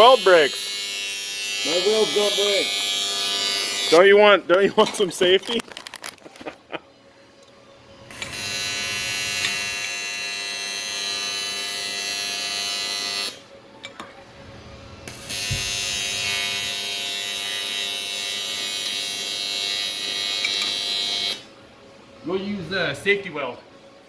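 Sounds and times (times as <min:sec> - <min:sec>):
welding arc buzzing: 0:00.0 - 0:04.3, 0:08.1 - 0:13.4, 0:14.5 - 0:21.5.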